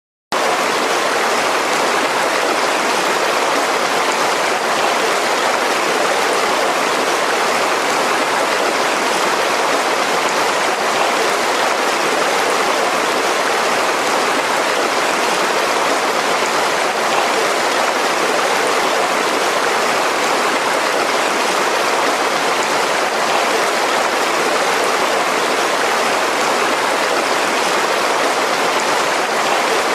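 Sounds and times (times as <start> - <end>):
river rushing over rocks: 0.4 - 29.9.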